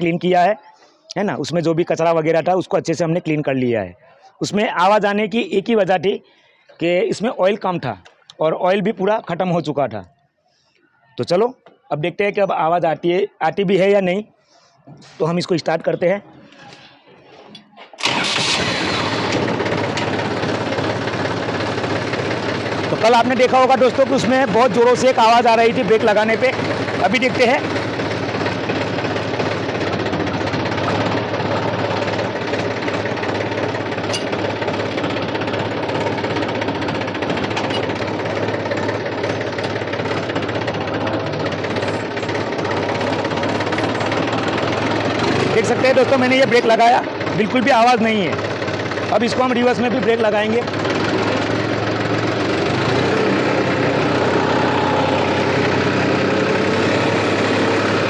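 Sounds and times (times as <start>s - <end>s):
tractor diesel engine knocking: 18.0s - 58.0s.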